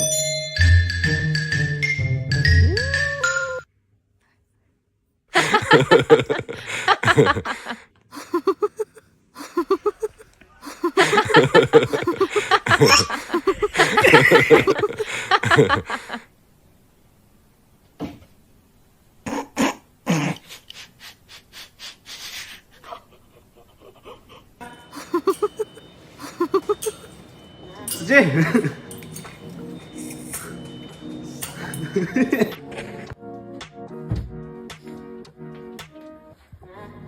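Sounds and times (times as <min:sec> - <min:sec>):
person laughing and coughing: 0:05.4 - 0:16.2, 0:25.0 - 0:27.1.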